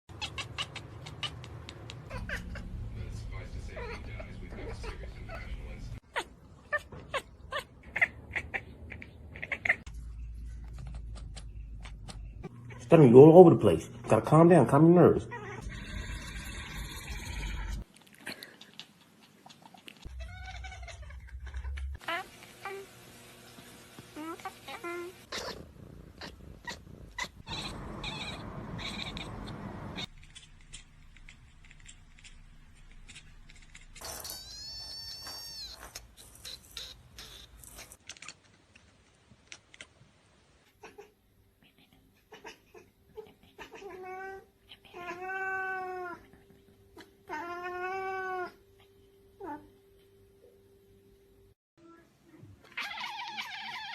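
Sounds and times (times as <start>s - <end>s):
cat meowing: 0.1s - 2.7s, 20.0s - 22.8s, 26.6s - 30.1s, 34.2s - 36.0s, 43.6s - 46.2s, 47.3s - 48.6s, 52.6s - 53.9s
cat chattering and chirping: 0.1s - 12.9s, 17.0s - 22.8s, 24.2s - 38.4s, 40.7s - 46.2s, 52.6s - 53.9s.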